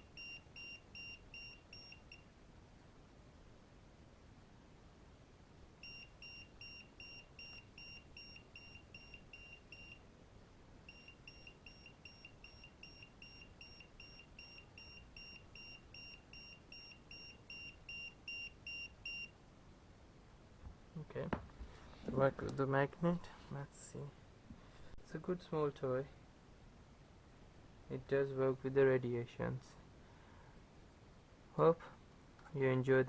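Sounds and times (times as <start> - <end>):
meter buzzer beeping: 5.8 - 10.0, 10.9 - 19.3.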